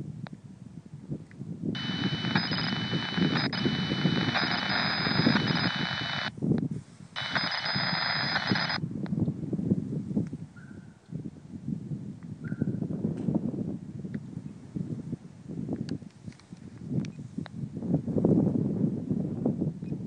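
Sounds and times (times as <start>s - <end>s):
buzzing digital data signal: 1.8s - 6.3s, 7.2s - 8.8s.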